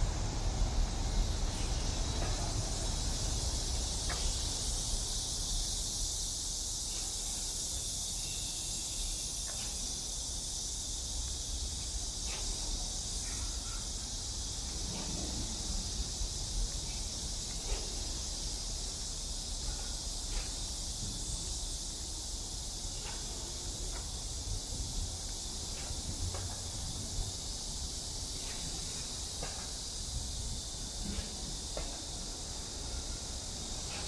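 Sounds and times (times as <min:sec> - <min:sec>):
insects droning: 0:00.0 - 0:34.0.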